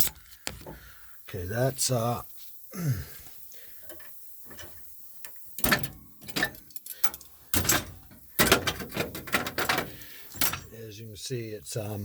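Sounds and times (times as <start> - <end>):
metal tools knocking and clunking: 5.6 - 10.7.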